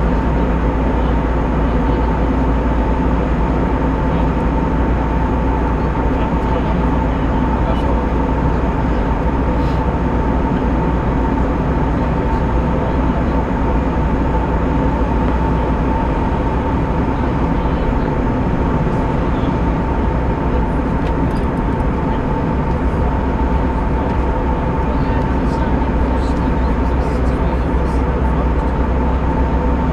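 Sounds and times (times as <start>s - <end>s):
jet engine cabin drone: 0.0s - 29.9s
steady hum tone: 0.0s - 29.9s.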